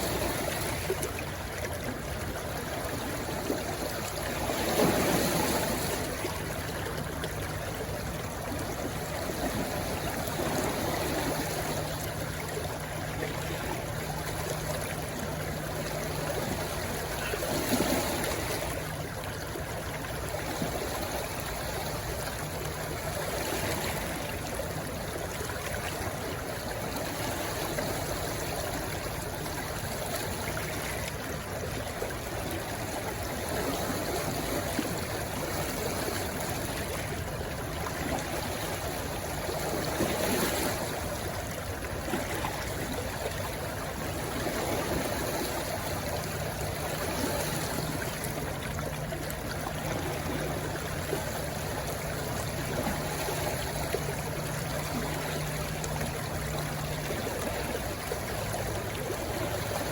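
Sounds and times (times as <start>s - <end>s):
stream rushing: 0.0s - 59.9s.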